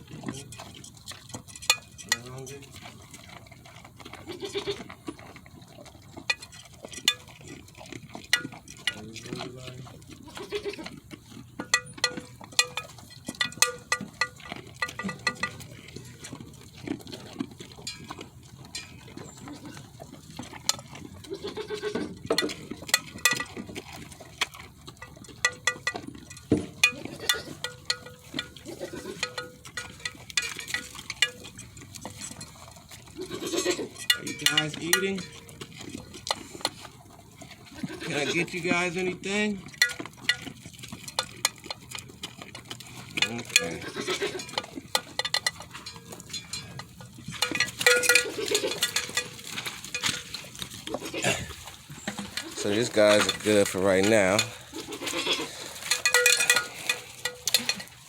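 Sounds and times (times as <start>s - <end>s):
goats eating from feeders: 0.0s - 58.0s
goat bleating: 4.1s - 5.0s, 10.2s - 11.0s, 21.2s - 22.2s, 26.8s - 27.6s, 28.6s - 29.3s, 33.1s - 34.0s, 37.7s - 38.6s, 43.6s - 44.6s, 48.0s - 49.0s, 50.9s - 51.6s, 54.5s - 55.8s
small clicks and clinks: 6.2s - 17.0s, 20.4s - 36.8s, 38.8s - 51.1s, 52.0s - 58.0s.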